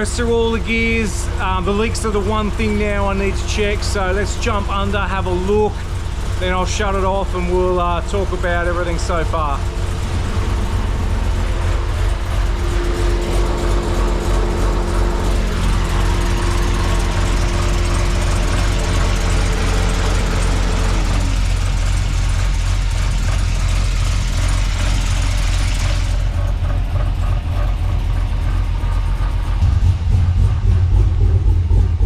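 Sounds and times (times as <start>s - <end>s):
car engine idling: 0.0s - 32.0s
gliding whine: 8.1s - 23.7s, 24.6s - 32.0s.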